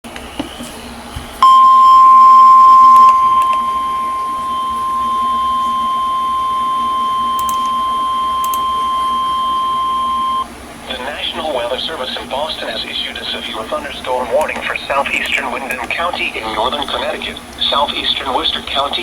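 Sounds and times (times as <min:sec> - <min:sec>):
steady high-pitched alert tone: 0:01.4 - 0:10.5.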